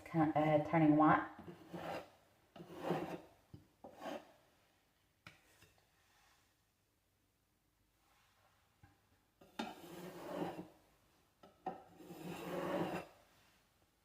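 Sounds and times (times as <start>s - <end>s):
putty knife scraping spackle: 1.4s - 4.4s, 9.4s - 10.8s, 11.7s - 13.2s.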